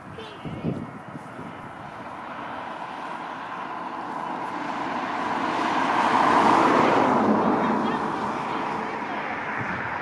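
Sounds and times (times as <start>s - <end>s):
road vehicle approaching: 0.0s - 10.0s.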